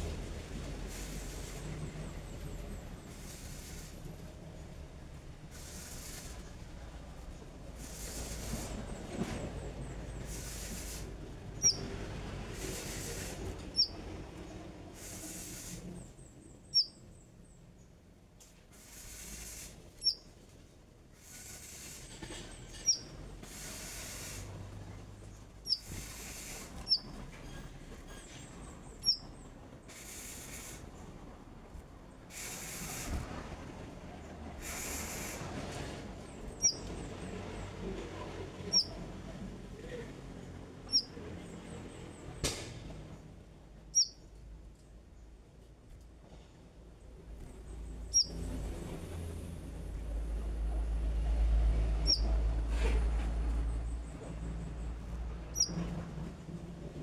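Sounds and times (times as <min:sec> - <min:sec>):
songbird high chirps: 0:11.5 - 0:12.0, 0:12.7 - 0:18.0, 0:19.4 - 0:20.4, 0:22.7 - 0:24.4, 0:25.3 - 0:27.2, 0:28.7 - 0:31.1, 0:36.5 - 0:37.2, 0:38.6 - 0:39.1, 0:40.9 - 0:41.2, 0:43.8 - 0:44.4, 0:47.6 - 0:48.6, 0:51.9 - 0:52.7, 0:53.4 - 0:56.1
background hiss: 0:18.6 - 0:20.2, 0:29.9 - 0:33.4.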